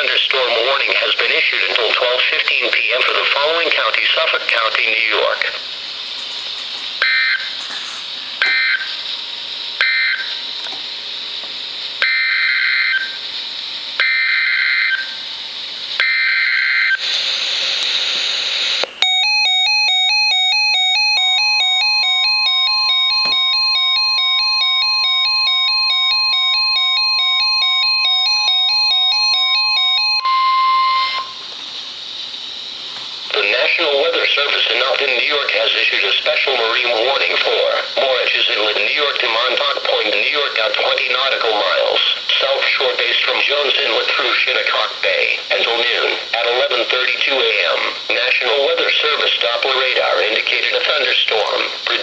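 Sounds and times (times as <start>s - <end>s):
screeching digital data bursts: 0.0s - 10.8s, 21.2s - 39.1s
steady warning alarm tone: 0.0s - 52.0s
hiss: 5.8s - 8.4s, 17.0s - 18.8s
alternating-tone electronic alert: 19.0s - 31.5s.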